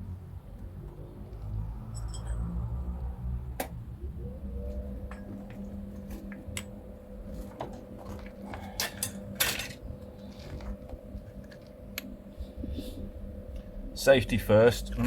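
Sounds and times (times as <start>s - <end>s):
electrical hum: 0.0s - 15.0s
metal clinks and knocks: 1.9s - 2.8s, 5.0s - 5.6s.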